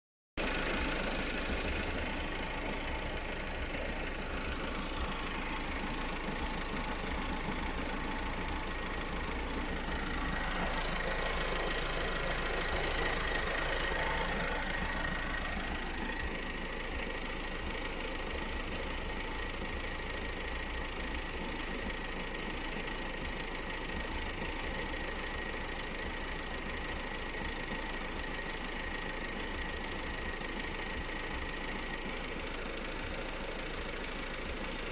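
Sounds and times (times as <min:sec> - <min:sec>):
diesel engine running: 0:00.4 - 0:34.9.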